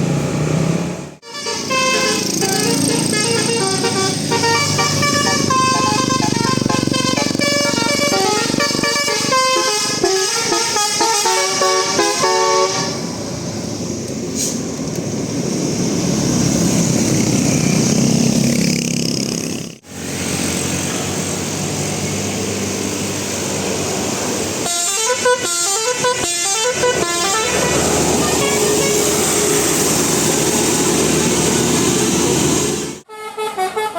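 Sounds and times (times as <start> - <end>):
engine and traffic noise: 0.0 - 33.9
multi-tone air horn jingle: 1.2 - 13.0.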